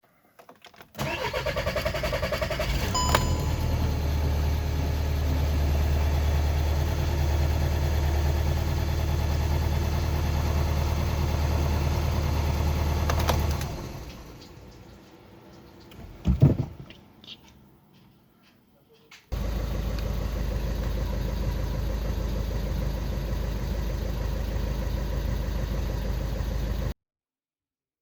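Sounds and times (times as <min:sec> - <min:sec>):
diesel engine cranking: 0:00.9 - 0:14.7, 0:19.3 - 0:26.9
diesel engine idling: 0:01.0 - 0:14.8, 0:19.3 - 0:27.0.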